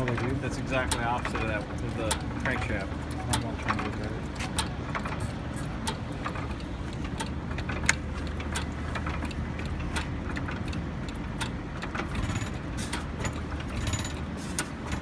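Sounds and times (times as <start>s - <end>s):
mechanical clicks: 0.0s - 15.0s
stationary engine low rumble: 0.0s - 15.0s.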